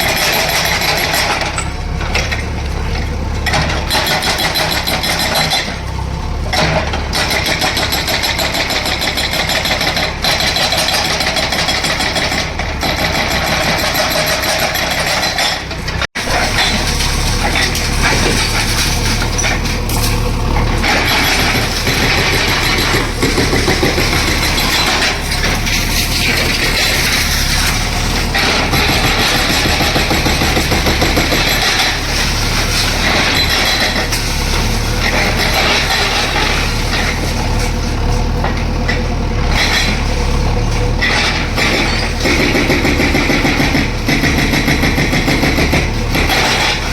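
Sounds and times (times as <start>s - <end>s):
dense mechanical clatter: 0.0s - 46.9s
heavy diesel engine running: 0.0s - 46.9s
noisy engine surges: 16.2s - 37.4s.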